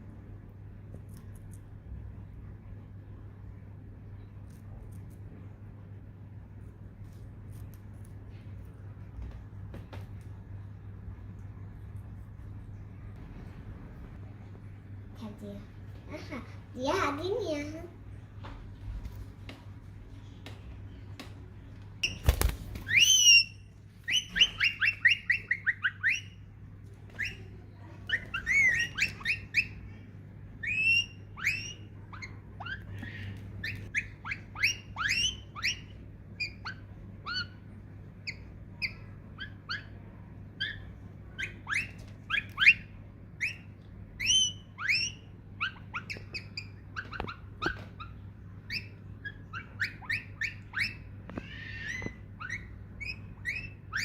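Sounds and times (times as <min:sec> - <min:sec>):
parakeet chirping: 0:22.0 - 0:54.0.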